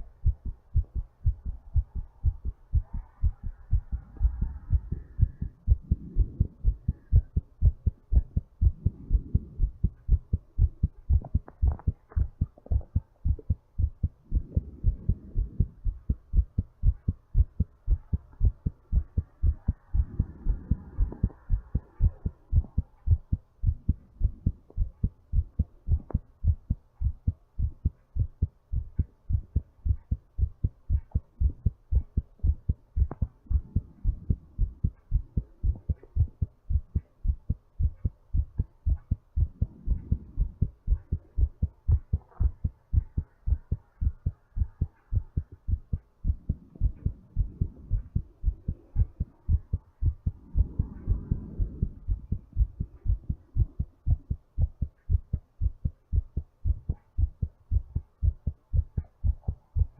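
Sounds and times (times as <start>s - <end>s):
muffled breathing: 0.0s - 26.2s, 33.0s - 37.0s, 39.4s - 54.8s
fast heartbeat thumps: 0.0s - 59.9s.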